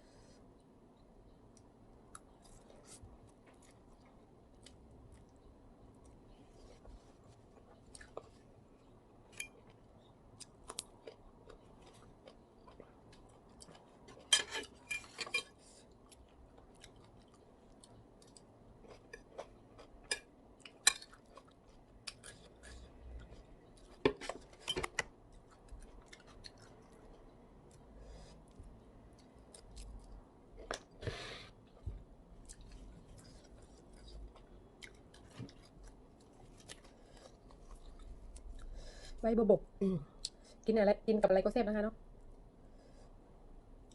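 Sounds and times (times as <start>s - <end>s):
person chewing and crunching: 9.4s - 14.8s, 15.7s - 24.6s, 25.3s - 27.9s, 32.4s - 38.7s.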